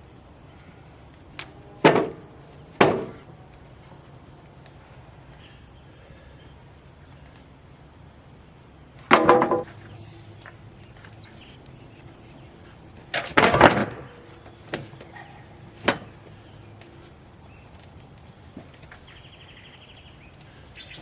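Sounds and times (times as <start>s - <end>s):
wooden boards clattering: 1.8s - 3.3s, 9.0s - 10.6s, 13.0s - 16.3s.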